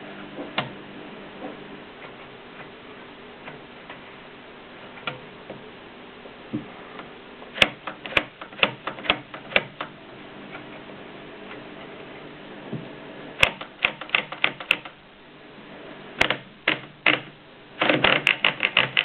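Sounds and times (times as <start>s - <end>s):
typewriter clicking: 7.6s - 9.9s, 13.4s - 15.0s, 16.2s - 19.0s.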